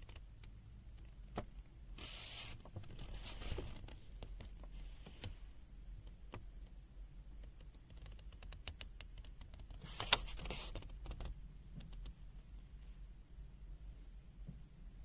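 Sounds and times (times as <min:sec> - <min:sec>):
short rustle: 0:02.0 - 0:04.0.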